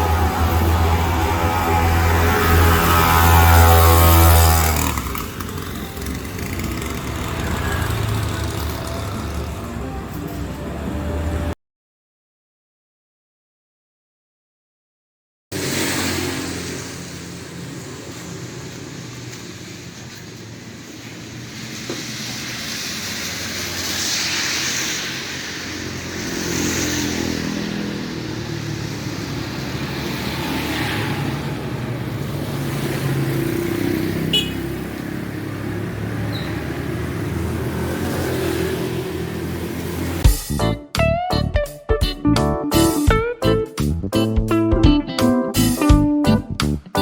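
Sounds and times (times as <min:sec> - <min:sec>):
small engine running: 0:00.0 - 0:09.8, 0:15.6 - 0:34.6.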